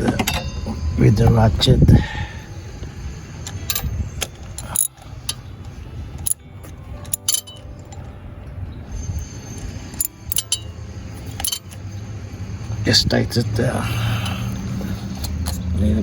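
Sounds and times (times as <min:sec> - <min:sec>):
low steady hum: 0:00.0 - 0:16.0
ratchet wrench clicking: 0:03.4 - 0:05.4, 0:07.1 - 0:08.0, 0:10.0 - 0:10.7, 0:11.3 - 0:11.8.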